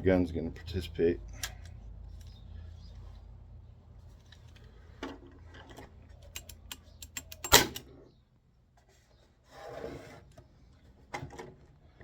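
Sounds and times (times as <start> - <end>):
staple gun firing bang: 7.4 - 7.8.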